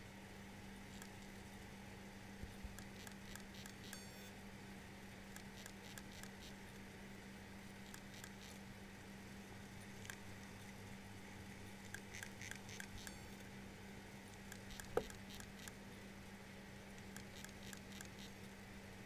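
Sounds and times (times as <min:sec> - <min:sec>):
hard drive hum: 0:00.0 - 0:19.0
hard drive clicking: 0:00.9 - 0:01.3, 0:02.4 - 0:04.3, 0:05.3 - 0:06.6, 0:07.8 - 0:08.6, 0:11.8 - 0:13.5, 0:14.3 - 0:15.8, 0:17.0 - 0:18.4.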